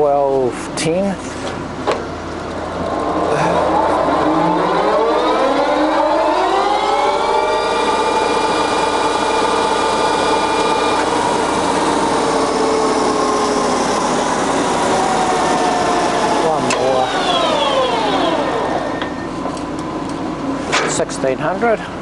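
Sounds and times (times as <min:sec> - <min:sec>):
lathe headstock whine: 0:02.2 - 0:20.5.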